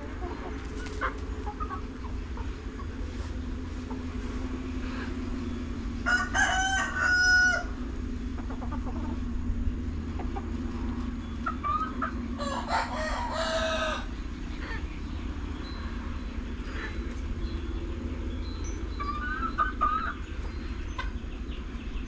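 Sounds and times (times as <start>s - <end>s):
hens clucking: 0.0s - 17.4s, 18.8s - 22.0s
steady low hum: 0.0s - 22.0s
rooster crowing: 6.0s - 7.8s, 12.4s - 14.2s.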